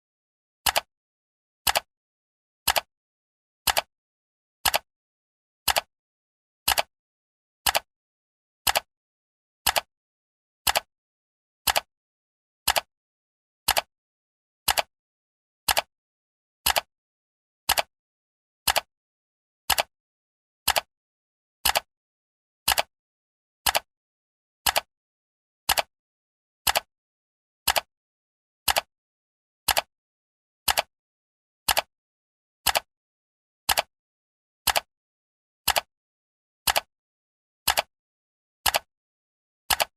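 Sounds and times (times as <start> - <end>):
clock ticking: 5.7 - 5.9, 10.7 - 10.9, 26.7 - 26.9, 30.7 - 30.9, 31.7 - 31.9, 34.7 - 34.9, 37.7 - 37.9, 39.7 - 39.9.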